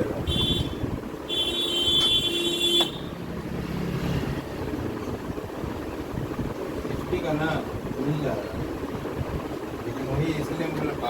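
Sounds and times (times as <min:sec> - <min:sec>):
road traffic rumble: 0:00.0 - 0:11.0
vehicle horn tooting: 0:00.2 - 0:03.2.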